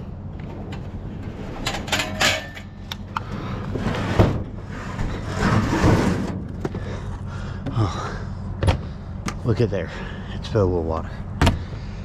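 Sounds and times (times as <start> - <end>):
steady low hum: 0.0 - 12.0
heavy scrap knocking and scraping: 3.7 - 6.8.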